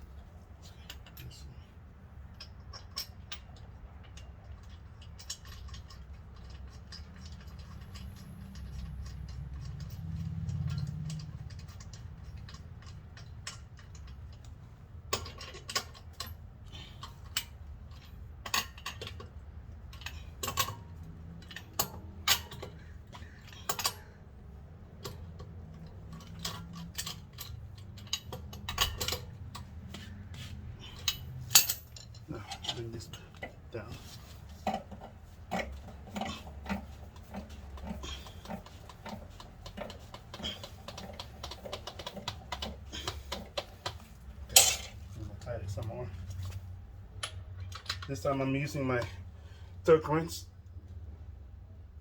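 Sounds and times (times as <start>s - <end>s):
metallic clinks of hand tools: 30.8s - 33.4s, 35.5s - 45.0s.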